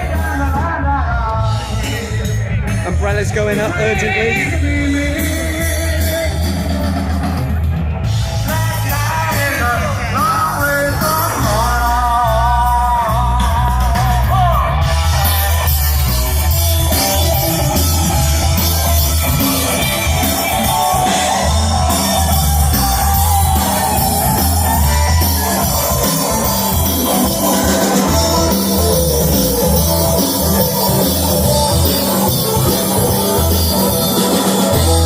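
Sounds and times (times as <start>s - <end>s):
loud rock music: 0.0s - 35.0s.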